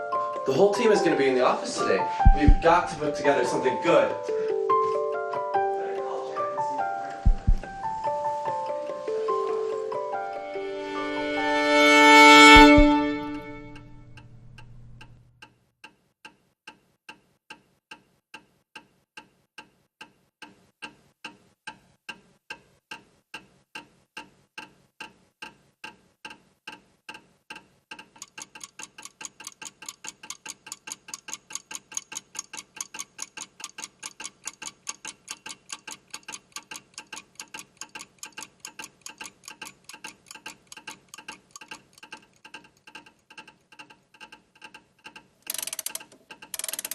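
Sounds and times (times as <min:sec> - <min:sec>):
clockwork ticking: 0:01.8 - 0:04.2, 0:07.3 - 0:08.2, 0:12.4 - 0:46.9
faster ticking: 0:02.2 - 0:03.3, 0:07.3 - 0:08.1, 0:28.2 - 0:46.9.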